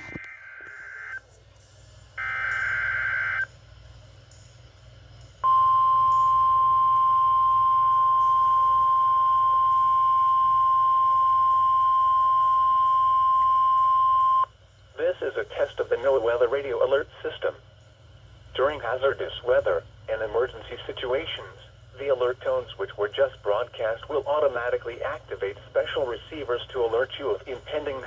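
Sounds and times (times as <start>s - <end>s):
buzzy data bursts: 2.2s - 3.5s.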